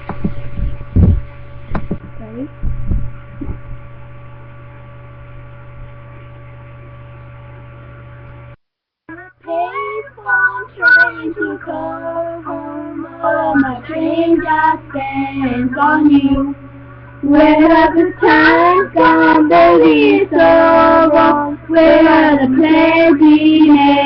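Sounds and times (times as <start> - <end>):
low knocks and bumps: 0.0 - 3.9
electrical mains hum: 0.0 - 24.0
young voice singing: 9.1 - 16.6, 17.2 - 24.0.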